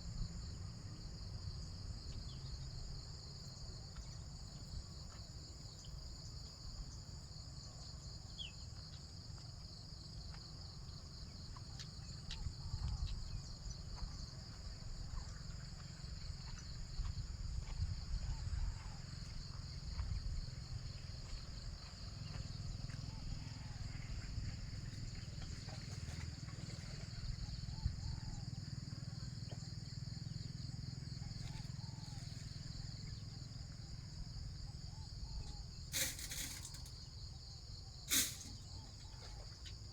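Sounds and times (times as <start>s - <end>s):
insect chorus trilling: 0.0s - 39.9s.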